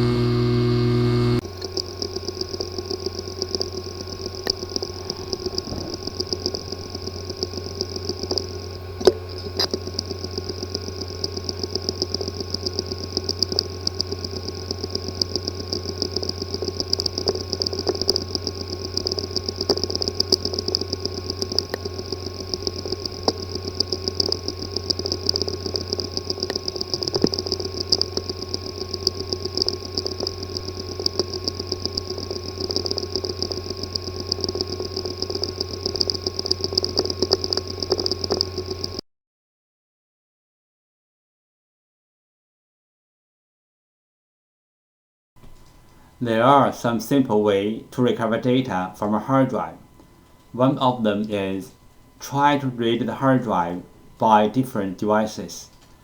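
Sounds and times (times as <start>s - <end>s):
hard drive buzzing: 0.0s - 39.0s, 45.4s - 56.0s
rapid hard drive ticking: 0.0s - 39.0s, 45.4s - 56.0s
sharp hard drive click: 0.0s - 39.0s.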